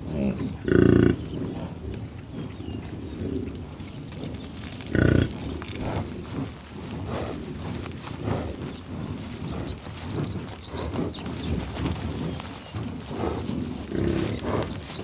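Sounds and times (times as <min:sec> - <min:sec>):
bison grunting: 0:00.0 - 0:15.0.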